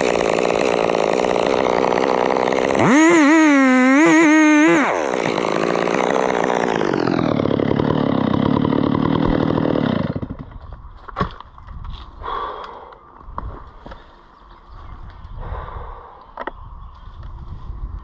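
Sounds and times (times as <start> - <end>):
chainsaw revving: 0.0 - 10.6.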